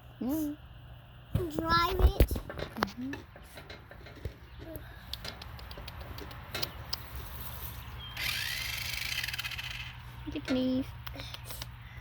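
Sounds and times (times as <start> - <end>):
toy car motor whirring: 8.2 - 9.9.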